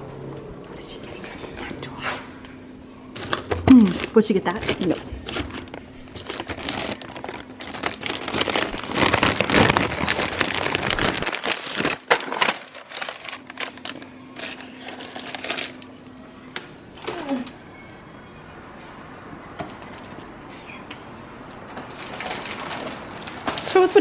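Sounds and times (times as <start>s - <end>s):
rustling and crinkling: 3.2s - 15.9s, 21.6s - 24.0s.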